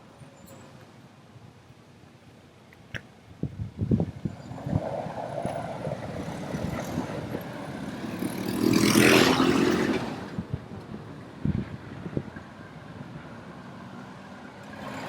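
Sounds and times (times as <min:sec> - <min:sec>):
wind buffeting microphone: 0:03.3 - 0:13.5
motor vehicle passing: 0:04.5 - 0:10.6.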